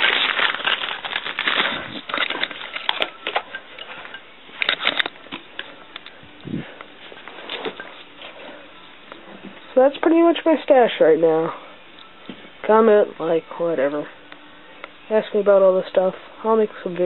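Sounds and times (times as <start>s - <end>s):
packaging rustling and crinkling: 0.0s - 9.6s.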